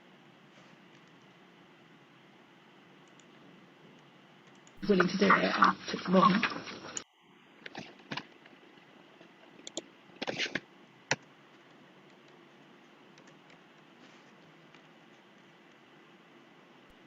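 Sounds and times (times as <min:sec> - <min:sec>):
faint room hum: 0:00.0 - 0:17.0
keyboard clicks: 0:03.0 - 0:03.4, 0:04.4 - 0:04.8, 0:09.6 - 0:12.4, 0:13.1 - 0:13.6.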